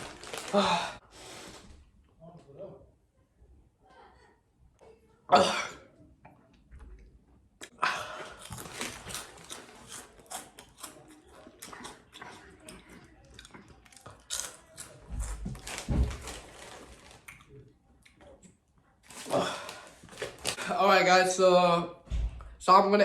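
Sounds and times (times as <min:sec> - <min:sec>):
crunchy chewing of snacks: 0:00.0 - 0:01.0, 0:07.6 - 0:20.6
person coughing: 0:05.3 - 0:05.9.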